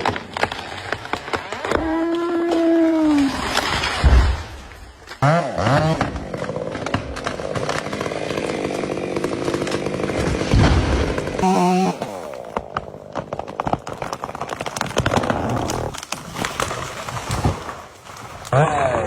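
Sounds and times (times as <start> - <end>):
wood cracking and snapping: 0.0 - 11.4, 12.2 - 18.5
chainsaw running: 5.6 - 13.0
tree hitting the ground: 6.2 - 18.5.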